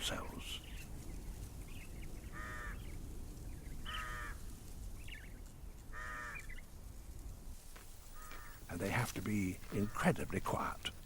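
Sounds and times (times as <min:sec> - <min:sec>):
short bird calls: 0:02.2 - 0:02.9, 0:08.1 - 0:08.7.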